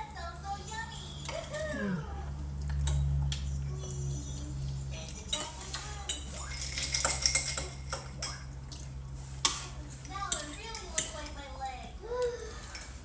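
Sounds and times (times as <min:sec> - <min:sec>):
cutlery clinking on plates: 0:05.3 - 0:08.5.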